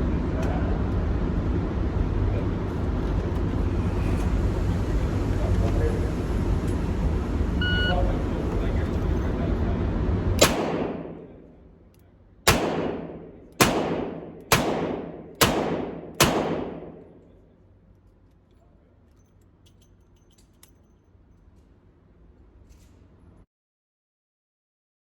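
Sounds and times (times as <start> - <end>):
revolver shots echoing: 10.4 - 11.5, 12.5 - 17.2.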